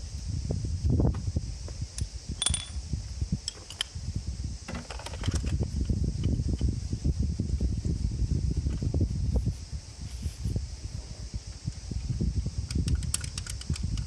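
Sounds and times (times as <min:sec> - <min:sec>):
wind rumbling on microphone: 0:00.0 - 0:14.0
hand tools clicking and clinking: 0:02.4 - 0:02.8, 0:12.8 - 0:14.0.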